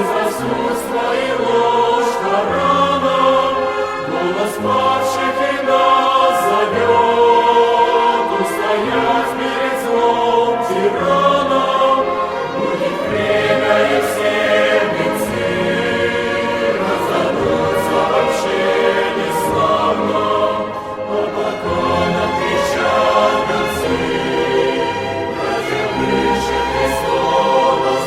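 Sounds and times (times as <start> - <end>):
choir singing a hymn: 0.0 - 28.0.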